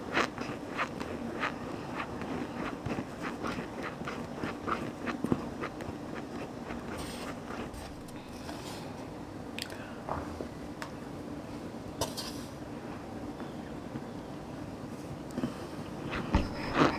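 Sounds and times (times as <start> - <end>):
person chewing crunchy food: 0.0 - 8.6.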